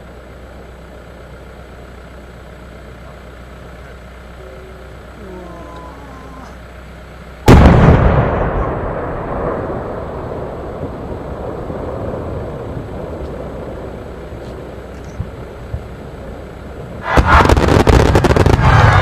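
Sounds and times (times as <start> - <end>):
long rumble: 0.0 - 19.0
firework explosion: 7.4 - 16.0, 16.9 - 19.0.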